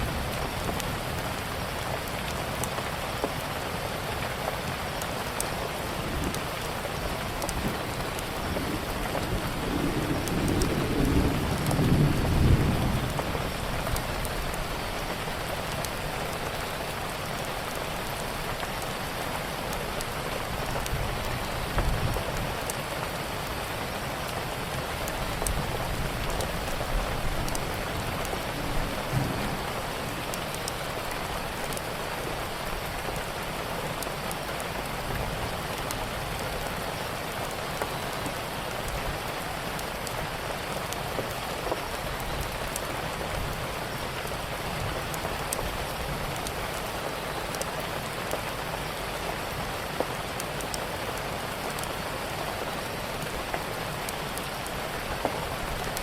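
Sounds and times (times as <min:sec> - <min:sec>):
steady rain: 0:00.0 - 0:56.0
thunder rumbling: 0:06.0 - 0:16.2, 0:25.5 - 0:31.8.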